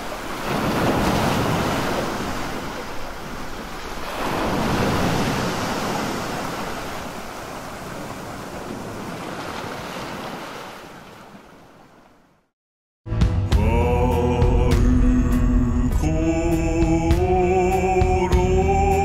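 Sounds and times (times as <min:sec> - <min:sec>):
sea waves washing ashore: 0:00.0 - 0:12.4
music: 0:13.1 - 0:19.0.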